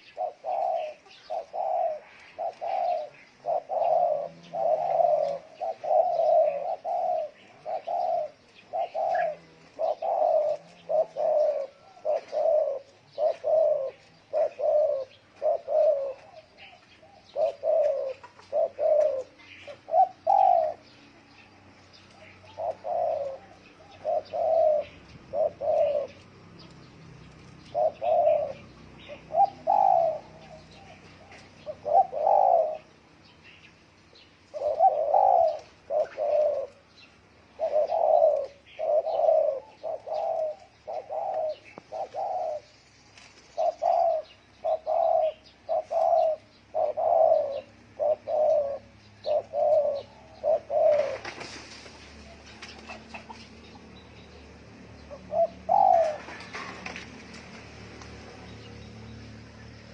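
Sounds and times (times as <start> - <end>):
dove cooing: 0.0 - 59.9.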